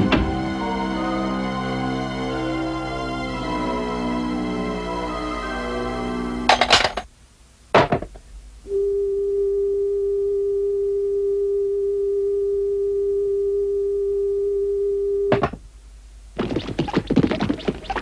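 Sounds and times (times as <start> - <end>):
steady electronic tone: 0.0 - 6.6.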